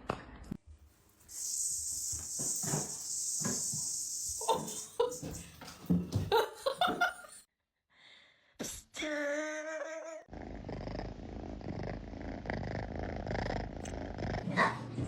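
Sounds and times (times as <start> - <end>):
cat purring: 10.3 - 15.0.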